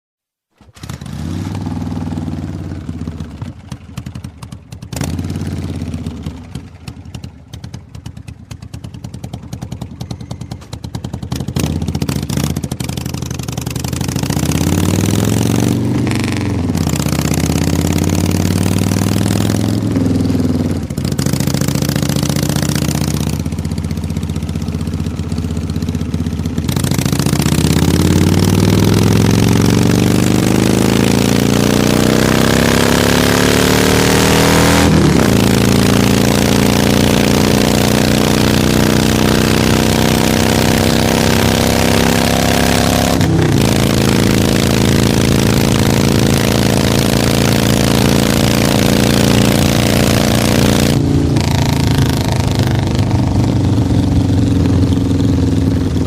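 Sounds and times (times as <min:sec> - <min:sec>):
motorcycle engine starting and revving: 0:00.5 - 0:56.0.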